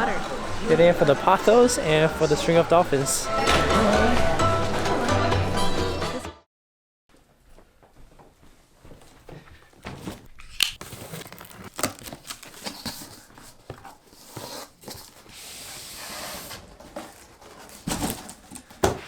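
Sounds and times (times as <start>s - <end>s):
packaging ripping: 10.4s - 13.6s
packaging snapping and crinkling: 10.4s - 14.0s.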